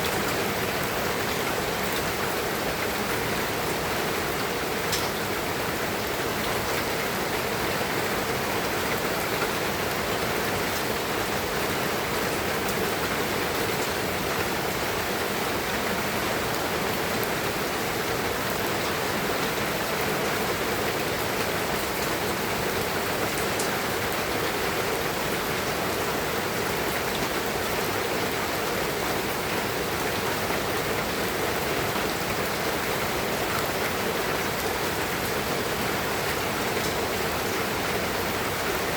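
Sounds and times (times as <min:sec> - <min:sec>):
steady rain hissing: 0:00.0 - 0:38.9.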